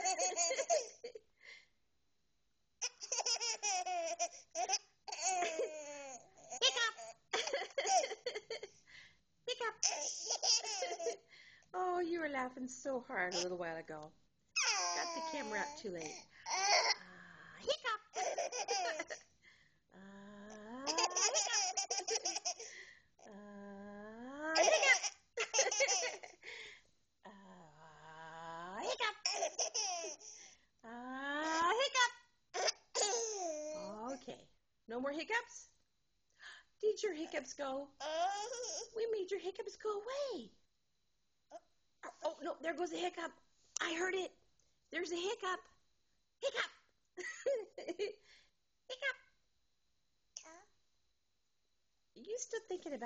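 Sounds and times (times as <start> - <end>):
child laughing with hiccups: 2.8 - 8.7, 9.8 - 11.2, 18.1 - 19.2, 20.8 - 22.7, 24.6 - 26.4, 28.9 - 30.2.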